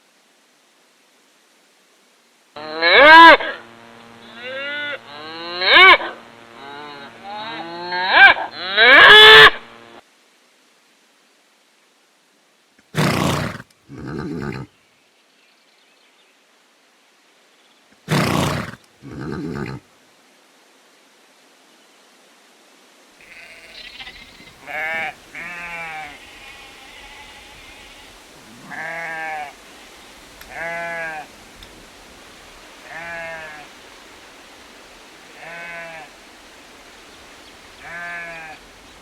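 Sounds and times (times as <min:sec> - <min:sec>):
livestock bleating: 0:02.6 - 0:10.0, 0:13.0 - 0:14.7, 0:18.1 - 0:19.8, 0:23.2 - 0:31.3, 0:32.8 - 0:33.7, 0:35.4 - 0:36.2, 0:37.8 - 0:38.6
rough animal calls: 0:02.8 - 0:09.8, 0:12.9 - 0:14.7, 0:18.1 - 0:19.8, 0:23.2 - 0:31.2.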